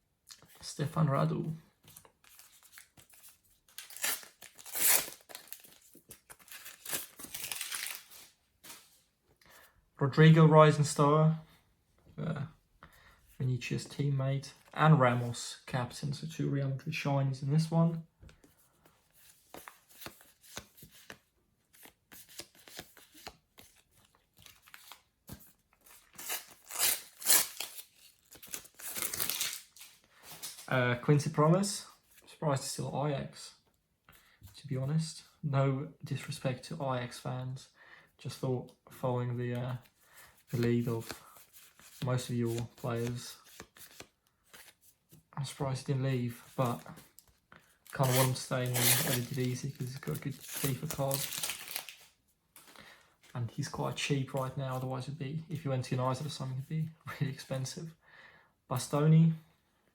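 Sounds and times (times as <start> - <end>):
paper stickers rustling: 2.2 - 8.9, 47.9 - 52.7
wrapper tearing and crinkling: 3.7 - 8.3, 25.8 - 30.7, 47.8 - 52.1.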